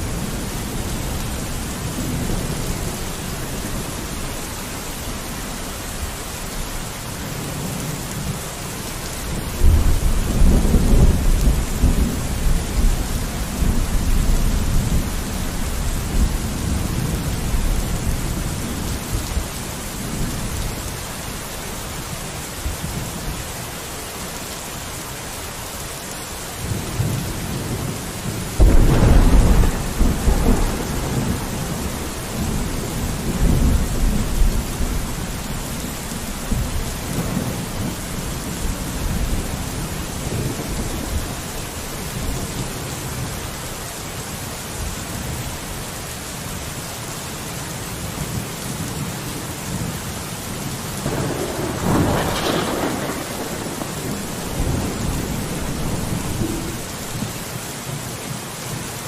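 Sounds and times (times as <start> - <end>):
rain against a window: 0.0 - 59.0
thunder rumbling: 9.3 - 20.7, 26.6 - 43.3, 51.0 - 57.4
loud thunderclap: 28.6 - 35.1, 51.0 - 57.3.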